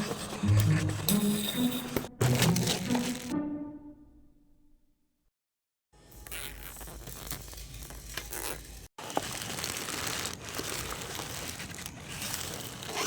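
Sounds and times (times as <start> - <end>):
crumpling and crinkling: 6.3 - 13.0.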